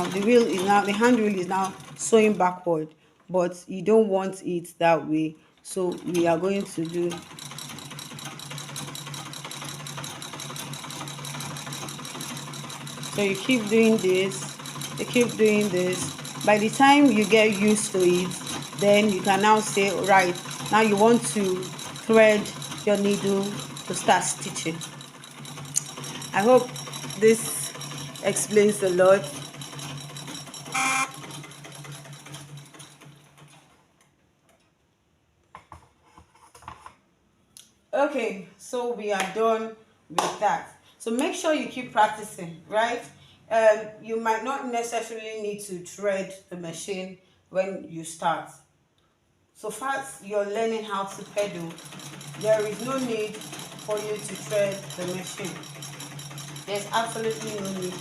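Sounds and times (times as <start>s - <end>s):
treadle sewing machine ticking: 0.0s - 2.4s, 5.8s - 33.8s, 50.9s - 58.0s.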